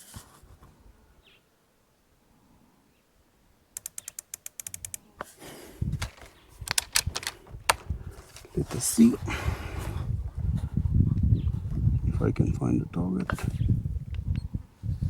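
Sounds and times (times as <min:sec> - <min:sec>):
scope turret clicks: 0:03.8 - 0:05.0, 0:06.0 - 0:07.8.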